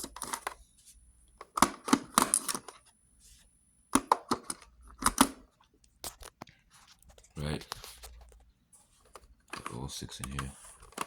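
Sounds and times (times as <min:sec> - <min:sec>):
batteries clacking into plastic compartment: 0:01.4 - 0:02.8.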